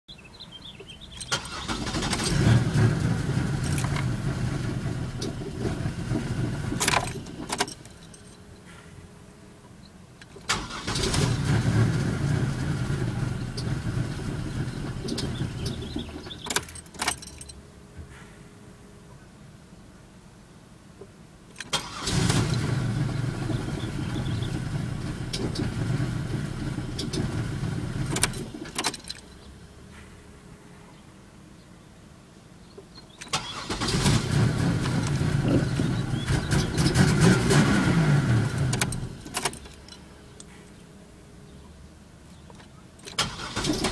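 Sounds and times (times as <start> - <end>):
car engine cranking on starter: 0.9 - 8.1, 10.2 - 17.5, 21.5 - 29.3, 33.1 - 40.1, 43.0 - 43.9
starter clicks: 14.7 - 17.5.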